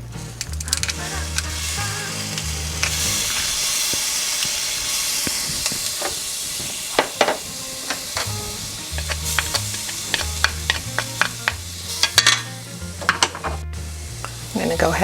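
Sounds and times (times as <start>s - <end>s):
garlic sizzling in frying pan: 0.0s - 15.0s
utensil clinking against pan: 9.0s - 13.5s.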